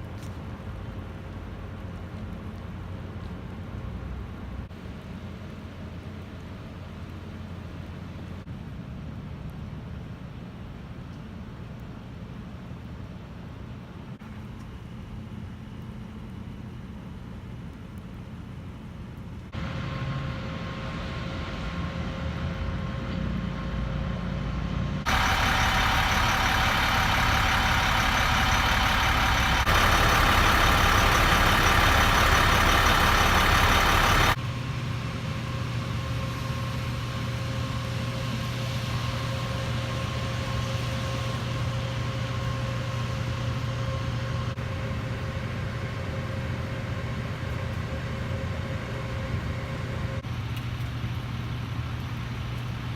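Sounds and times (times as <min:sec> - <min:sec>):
road noise: 0:00.0 - 0:14.8, 0:18.3 - 0:34.6
vehicle engine hum: 0:00.0 - 0:52.9
loud hissy noise: 0:25.1 - 0:34.4.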